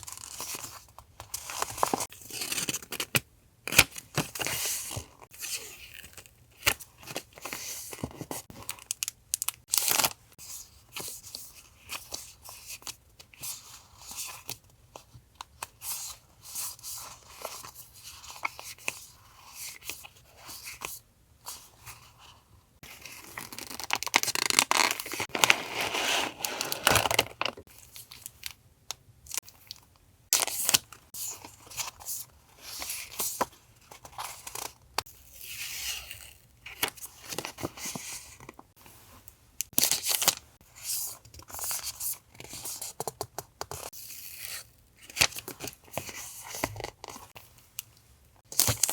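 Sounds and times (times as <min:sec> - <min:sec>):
paper tearing and crinkling: 0:23.2 - 0:27.6.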